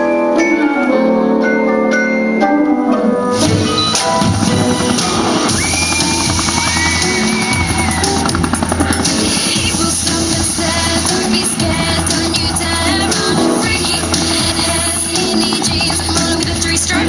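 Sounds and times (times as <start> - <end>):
held melodic notes: 0.0 - 17.0
high sliding melodic line: 0.0 - 17.0
deep bass: 3.4 - 17.0
drum beat: 3.4 - 17.0.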